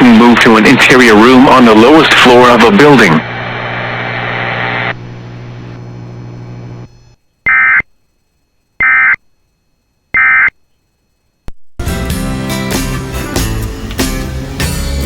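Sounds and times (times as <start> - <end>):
buzzing hum with hiss: 0.0 - 11.8.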